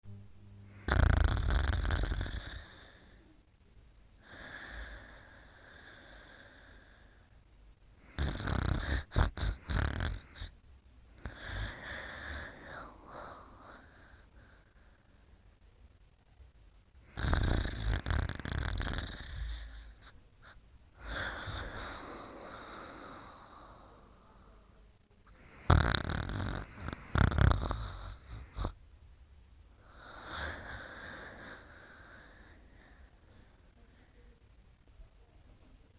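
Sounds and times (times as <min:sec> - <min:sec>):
loud rattling snore: 0:00.8 - 0:02.8, 0:08.1 - 0:10.5, 0:17.1 - 0:19.9, 0:25.4 - 0:28.8.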